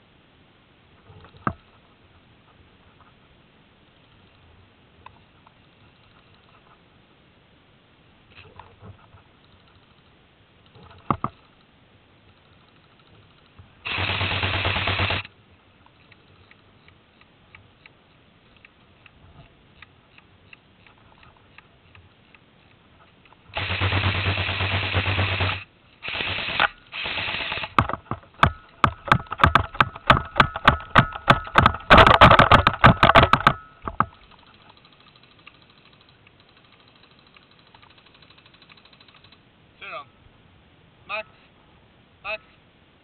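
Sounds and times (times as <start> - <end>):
airsoft guns firing bursts: 13.8 - 15.3, 23.5 - 33.6.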